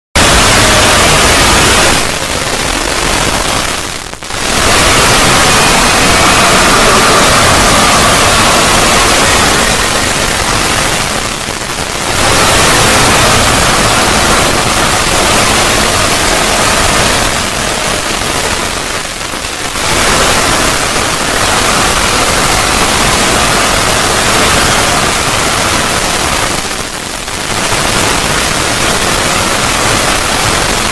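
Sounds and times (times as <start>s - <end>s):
harsh static-like noise: 0.0s - 30.9s.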